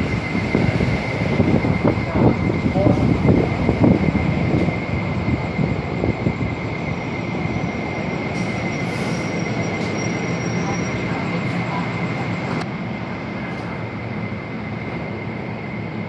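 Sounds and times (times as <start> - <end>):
train cars rumbling: 0.0 - 16.0.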